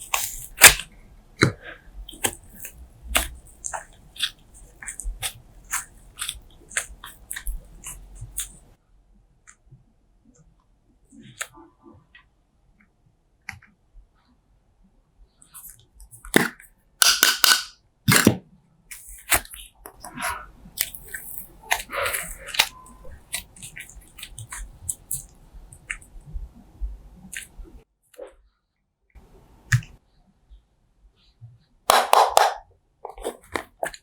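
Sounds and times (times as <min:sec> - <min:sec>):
slime squeezed with sticky pops: 0:00.0 - 0:08.7, 0:15.6 - 0:26.1, 0:31.9 - 0:34.0.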